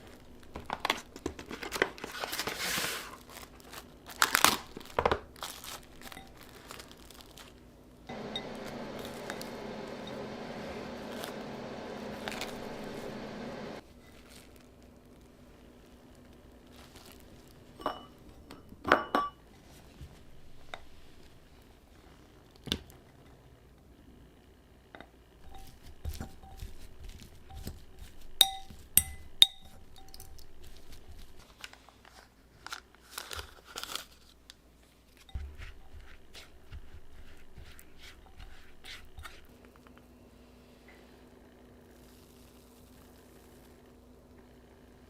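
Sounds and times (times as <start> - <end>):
crinkling: 0.0 - 10.0, 10.8 - 18.3, 25.5 - 40.1
utensil clinking against bowl: 28.4 - 30.6.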